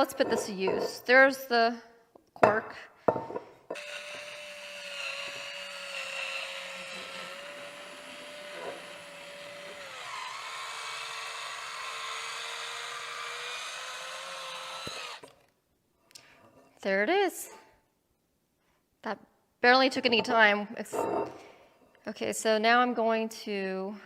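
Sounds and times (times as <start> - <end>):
electric corkscrew motor whining: 3.8 - 15.4.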